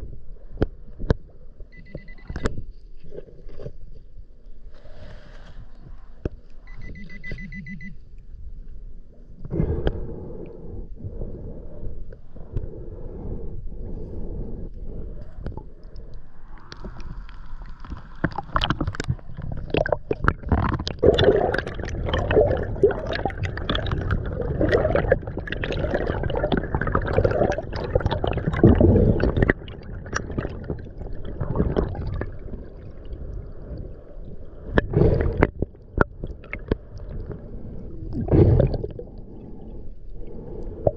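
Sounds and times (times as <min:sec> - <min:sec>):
pulsed beep: 0:01.7 - 0:02.5, 0:06.7 - 0:08.0
knocks and clicks underwater: 0:15.2 - 0:32.8, 0:34.6 - 0:37.5
water gurgling and splashing: 0:15.5 - 0:40.9.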